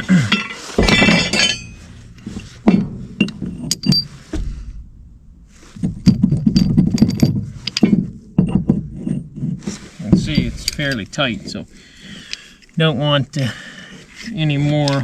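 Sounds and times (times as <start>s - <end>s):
metal parts clinking together: 0.0s - 4.1s, 6.0s - 8.0s.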